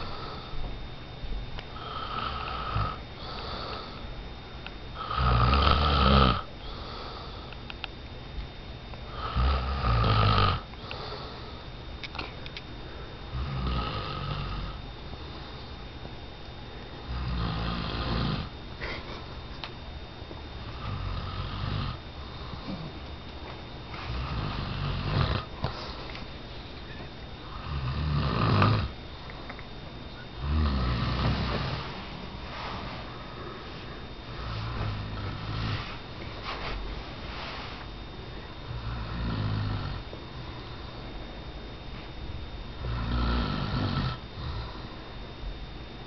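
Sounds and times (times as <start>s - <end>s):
person snoring: 0.0s - 0.6s, 1.7s - 4.1s, 5.0s - 7.5s, 9.1s - 11.6s, 13.2s - 14.8s, 17.0s - 19.0s, 20.6s - 23.0s, 24.0s - 26.0s, 27.4s - 29.0s, 30.4s - 36.0s, 38.6s - 40.0s, 42.8s - 45.0s.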